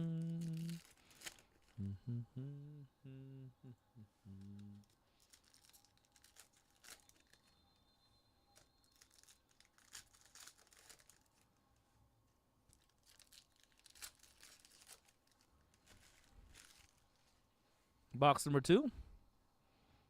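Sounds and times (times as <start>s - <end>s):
packaging crinkling and tearing: 0.1s - 1.8s, 4.8s - 7.6s, 8.6s - 11.6s, 12.7s - 17.2s.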